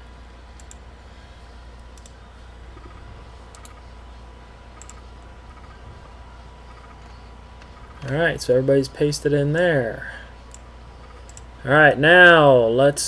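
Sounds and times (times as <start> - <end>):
low hum: 0.0 - 13.0
mouse and keyboard clicks: 2.8 - 3.8, 4.8 - 5.8, 6.7 - 8.2, 10.5 - 11.5.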